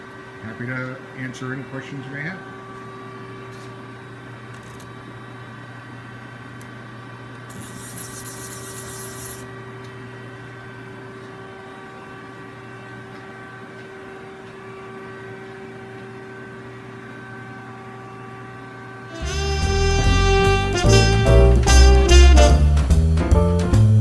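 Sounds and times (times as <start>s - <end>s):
machine hum with steady tones: 0.0s - 22.2s.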